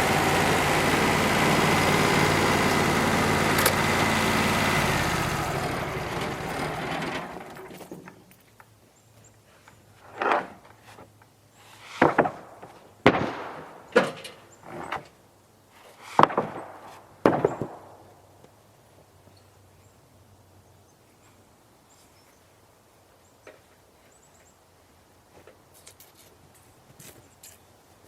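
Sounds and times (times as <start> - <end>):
engine running: 0.0 - 7.9
wooden boards knocking on a stack: 12.0 - 13.4.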